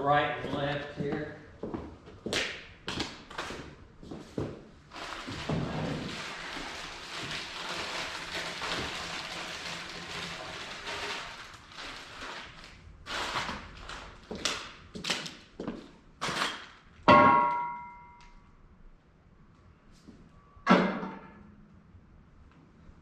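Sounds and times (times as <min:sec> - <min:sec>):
loud ringing metal clang: 0:17.1 - 0:18.2
metal knocks and clanks: 0:20.7 - 0:21.4.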